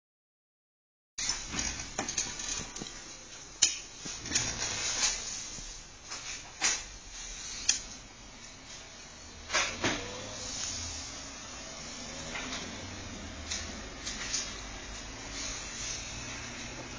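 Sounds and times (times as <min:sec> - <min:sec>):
low printer whir: 0:08.1 - 0:16.9.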